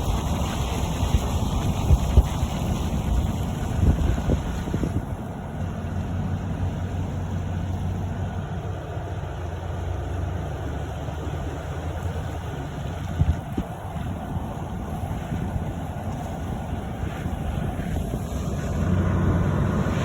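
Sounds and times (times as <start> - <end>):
wind buffeting microphone: 0.0 - 6.9, 10.9 - 20.0
river rushing roar: 0.0 - 20.0.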